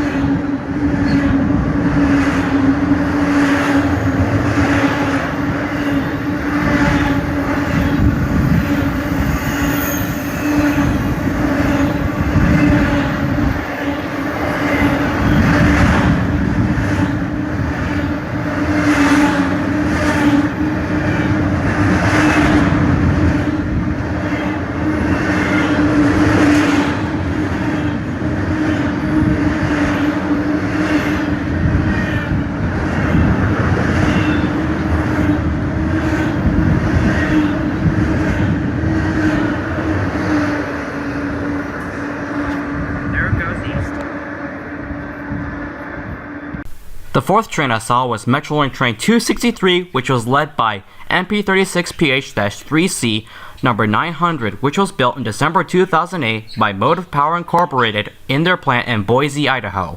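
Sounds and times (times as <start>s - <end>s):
wheels clacking over rail joints: 0.0s - 42.7s
freight train rumbling past: 0.0s - 59.9s.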